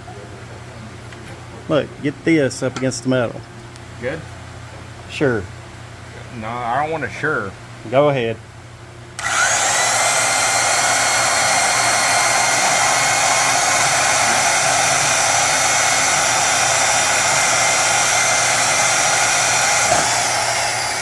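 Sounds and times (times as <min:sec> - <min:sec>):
power tool cutting steel: 0:09.2 - 0:21.0.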